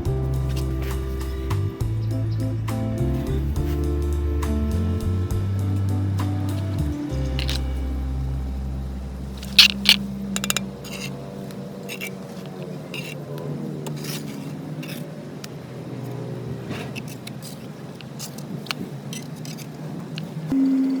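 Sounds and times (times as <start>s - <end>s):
low note: 0.0s - 11.6s
light scraping: 6.0s - 8.1s, 9.2s - 20.4s.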